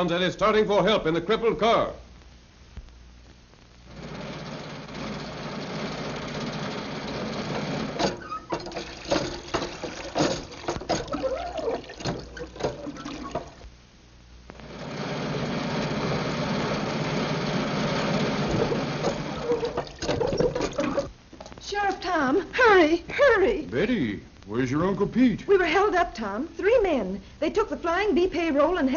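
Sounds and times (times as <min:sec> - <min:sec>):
irregular clanking and knocking: 0:07.1 - 0:13.6, 0:18.5 - 0:21.6.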